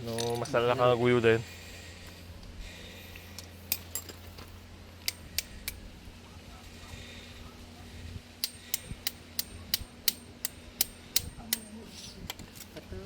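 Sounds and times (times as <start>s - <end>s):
steady low hum: 0.0s - 13.0s
metallic hand tool clicks: 8.4s - 11.7s.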